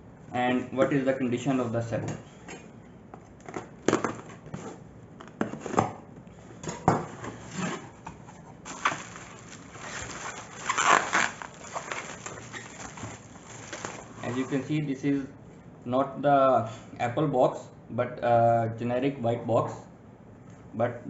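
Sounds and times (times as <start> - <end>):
cardboard scraping: 7.1 - 14.7.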